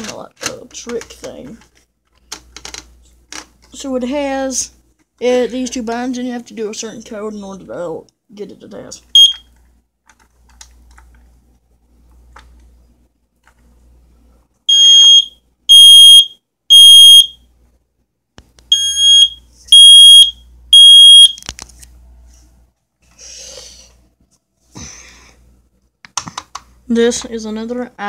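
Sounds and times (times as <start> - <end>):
smoke alarm beeps: 9.2 - 9.5, 14.7 - 17.4, 18.7 - 21.4.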